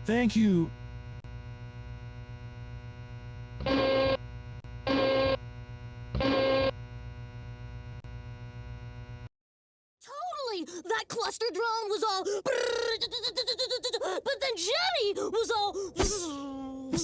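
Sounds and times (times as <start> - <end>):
digital data tone bursts: 6.2 - 6.8
steady background hum: 10.3 - 17.0.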